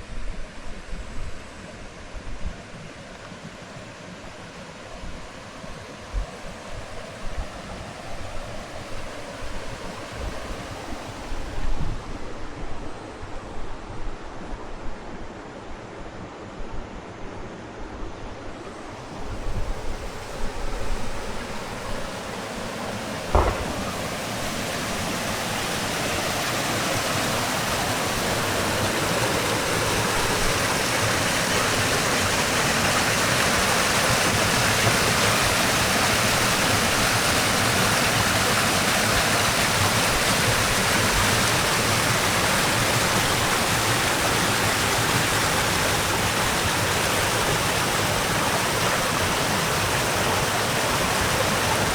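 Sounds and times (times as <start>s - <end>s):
stream water rushing: 18.6s - 51.9s
short knock: 23.3s - 24.3s.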